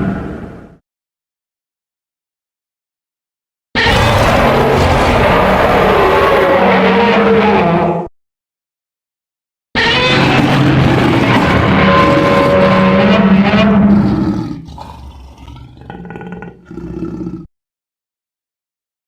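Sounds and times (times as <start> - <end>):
monster roar: 3.8 - 8.1, 9.8 - 17.5.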